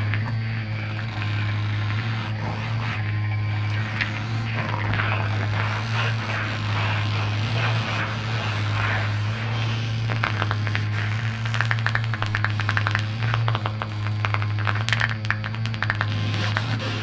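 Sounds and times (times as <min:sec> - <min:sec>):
hissing noisy texture: 0:00.0 - 0:17.0
low electronic drone: 0:00.0 - 0:17.0
short clicks and crackles: 0:00.0 - 0:17.0.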